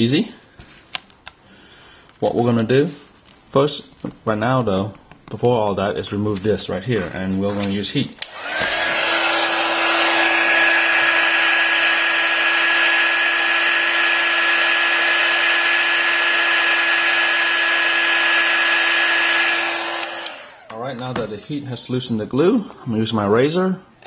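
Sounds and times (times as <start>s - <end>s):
hot-air blower rushing: 8.2s - 21.0s
motor whine: 8.3s - 20.7s.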